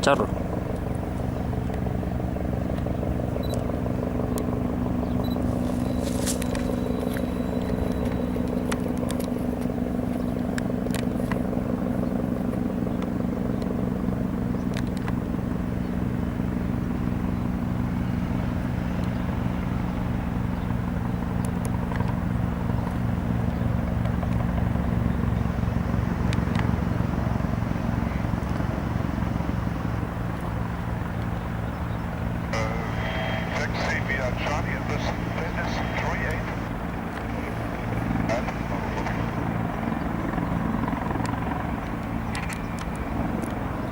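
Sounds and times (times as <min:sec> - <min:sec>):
helicopter rotor and turbines: 0:00.0 - 0:43.9.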